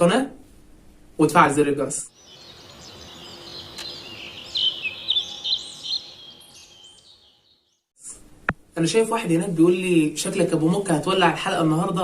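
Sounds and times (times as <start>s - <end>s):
small birds chirping: 2.1s - 7.9s.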